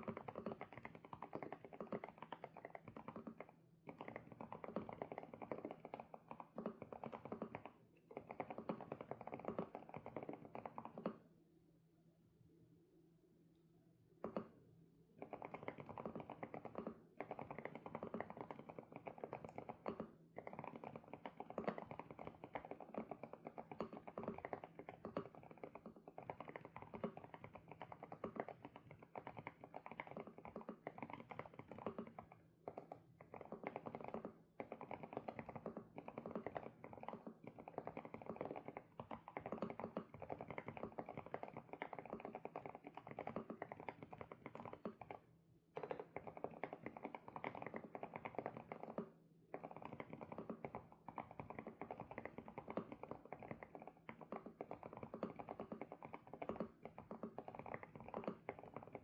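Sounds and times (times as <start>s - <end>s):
mechanical keyboard typing: 20.4s - 45.2s, 45.8s - 49.0s, 49.6s - 59.0s.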